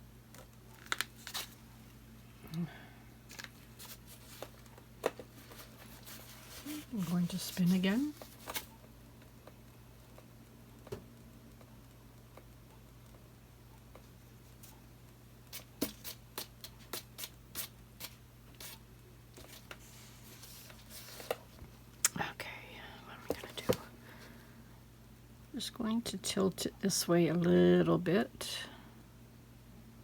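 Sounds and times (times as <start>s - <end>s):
faint low hum: 0.0s - 17.0s, 17.6s - 30.0s.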